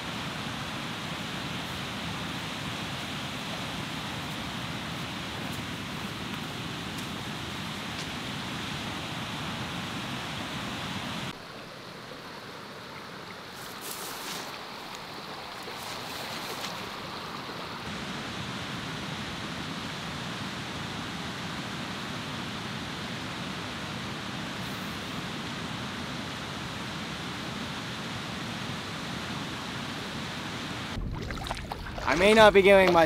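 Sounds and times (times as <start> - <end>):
river water rushing: 0.0 - 33.0
water splashes: 12.8 - 18.1, 30.9 - 33.0.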